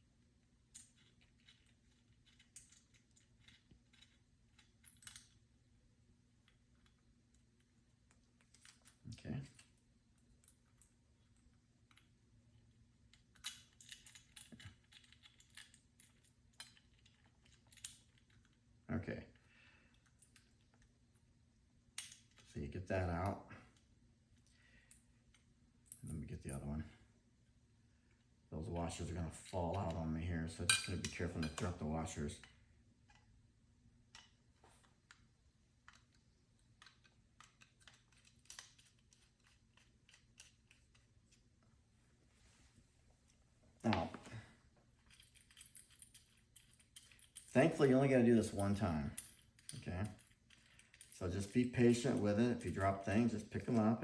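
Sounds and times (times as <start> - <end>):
screwdriver and metal parts clicking: 0.7 - 5.4, 13.1 - 18.6, 35.9 - 41.4, 45.0 - 47.6, 48.5 - 53.9.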